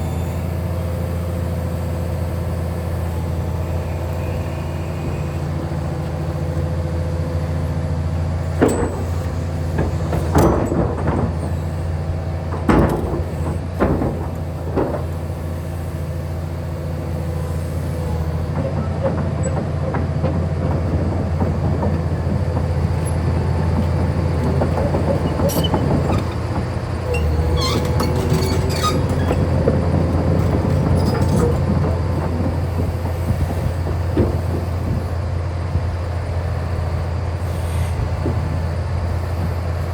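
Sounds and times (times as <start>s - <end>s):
excavator diesel drone: 0.0s - 39.9s
metallic clanks and knocks: 8.6s - 11.6s, 12.4s - 15.3s, 18.6s - 35.1s.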